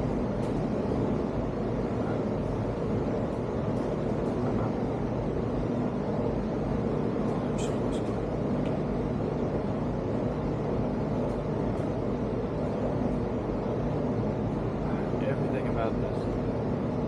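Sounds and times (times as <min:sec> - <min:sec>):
low mechanical drone: 0:00.0 - 0:17.0.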